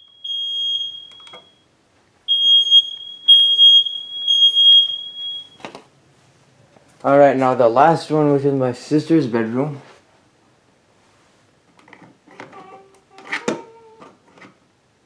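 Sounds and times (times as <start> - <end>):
smoke alarm beeping: 0.0 - 1.7, 2.3 - 5.7.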